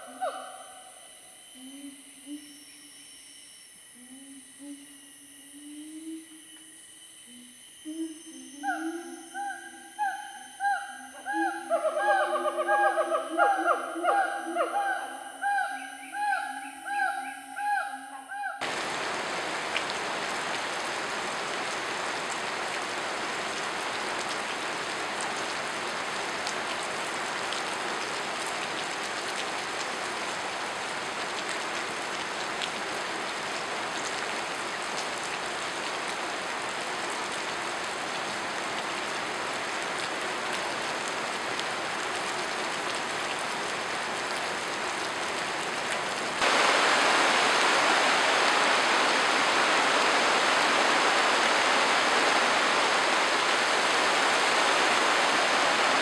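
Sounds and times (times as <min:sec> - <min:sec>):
water rushing: 0:18.6 - 0:56.0.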